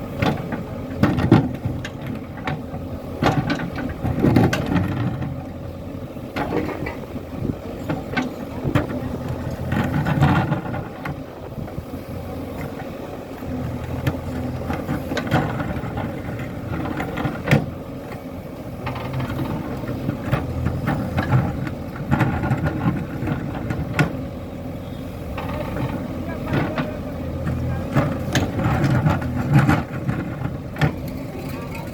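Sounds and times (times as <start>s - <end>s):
diesel engine running: 0.0s - 31.9s
metallic knocks and clanks: 6.4s - 7.2s.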